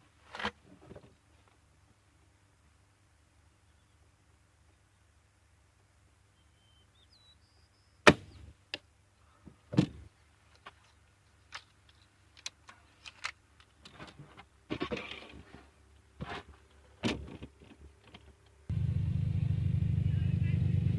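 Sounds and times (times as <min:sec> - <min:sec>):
small clicks: 0:10.5 - 0:13.9.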